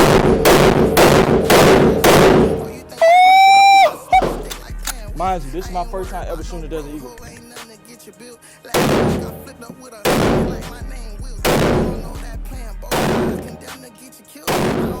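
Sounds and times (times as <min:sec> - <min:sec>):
pistol shots: 0:00.0 - 0:02.8, 0:08.8 - 0:09.4, 0:10.0 - 0:10.7, 0:11.4 - 0:12.0, 0:12.9 - 0:13.6, 0:14.5 - 0:15.0
background music: 0:00.0 - 0:15.0.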